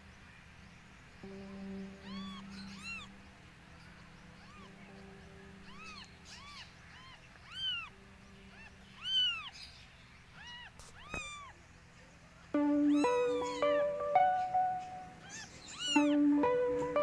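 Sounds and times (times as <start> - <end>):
music with held notes: 1.2 - 6.2, 12.5 - 17.0
kitten mewing: 2.0 - 3.1, 5.6 - 7.9, 8.5 - 9.5, 10.4 - 11.6, 12.8 - 13.8, 15.2 - 16.2.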